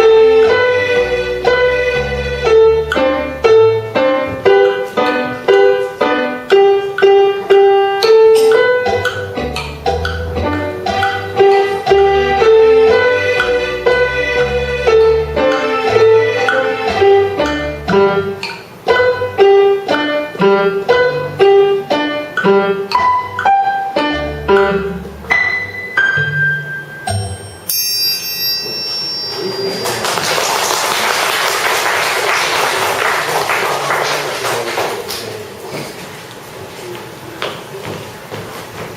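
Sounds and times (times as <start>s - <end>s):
plucked piano-like melody: 0.0s - 27.8s
bright ringing tone: 26.5s - 30.0s
alarm clock ringing: 27.1s - 30.0s.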